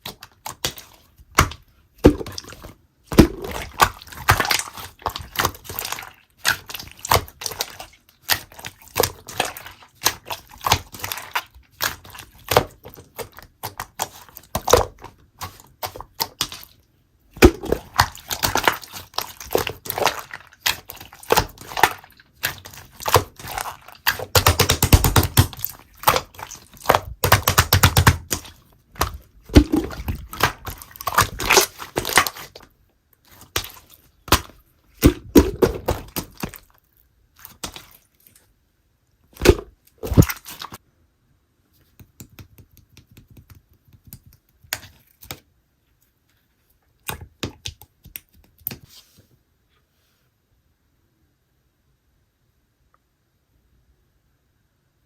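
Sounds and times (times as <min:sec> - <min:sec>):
slime crackling and popping: 0:17.4 - 0:32.5.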